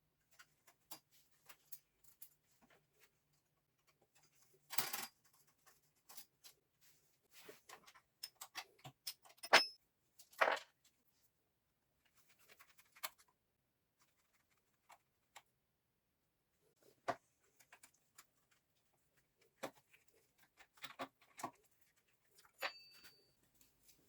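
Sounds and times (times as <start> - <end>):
metal tools clicking and knocking: 7.8 - 9.8, 22.6 - 23.2.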